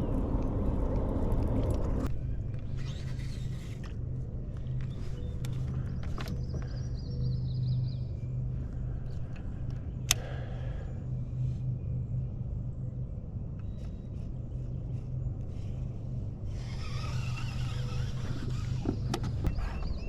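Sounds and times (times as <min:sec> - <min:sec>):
electric trolling motor humming: 0:14.2 - 0:19.5.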